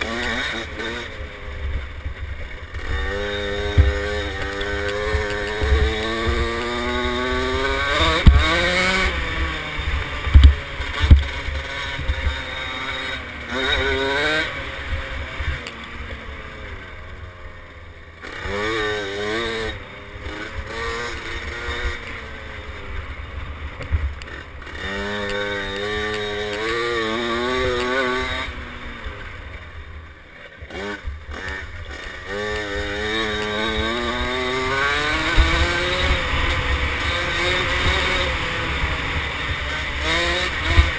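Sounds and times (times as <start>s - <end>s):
dirt bike engine revving: 0.0s - 40.9s.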